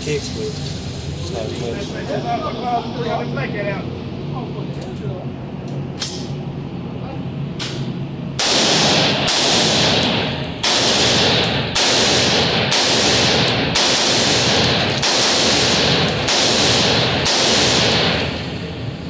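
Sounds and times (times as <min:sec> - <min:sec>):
gunshots with ringing echo: 0:08.4 - 0:18.9.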